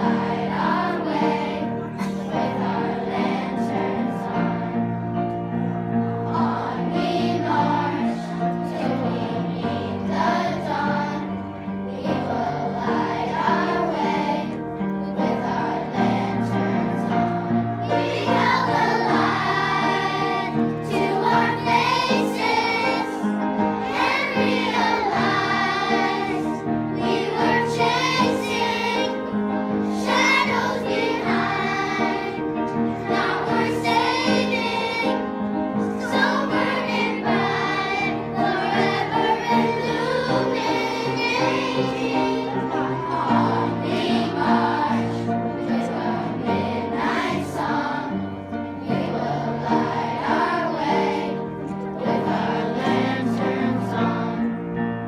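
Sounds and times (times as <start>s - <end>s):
choir singing: 0.0s - 55.0s.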